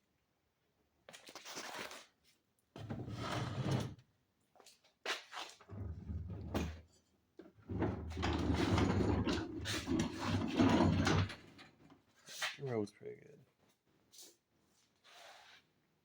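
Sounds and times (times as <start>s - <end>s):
tool cart rumbling and scraping: 2.8s - 3.9s, 7.6s - 11.7s.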